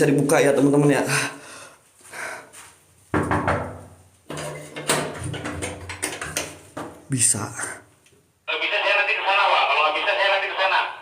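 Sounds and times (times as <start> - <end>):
door rattling and banging: 3.2 - 7.1.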